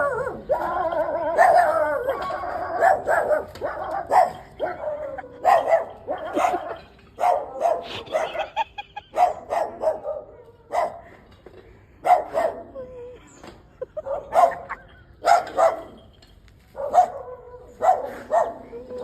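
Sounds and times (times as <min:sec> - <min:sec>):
dog barking: 0:01.3 - 0:11.0, 0:12.0 - 0:12.7, 0:14.0 - 0:16.0, 0:16.8 - 0:18.8.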